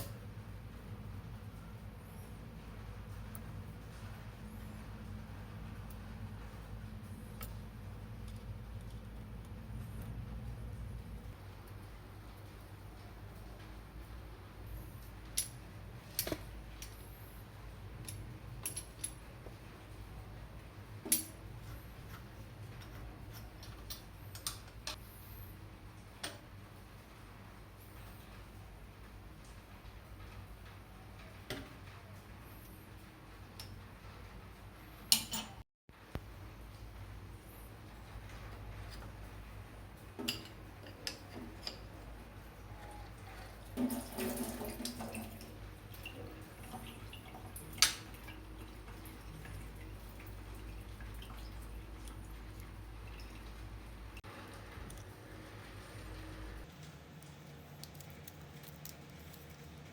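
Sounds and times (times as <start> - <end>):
steady low hum: 0.0 - 26.1
water dripping: 43.6 - 55.1.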